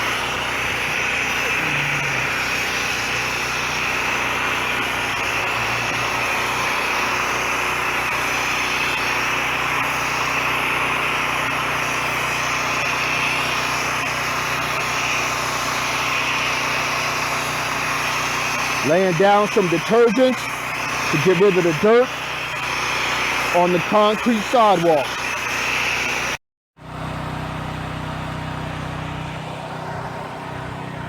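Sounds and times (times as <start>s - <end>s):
water spraying hiss: 0.0s - 10.4s
pressure washer engine running: 0.0s - 31.0s.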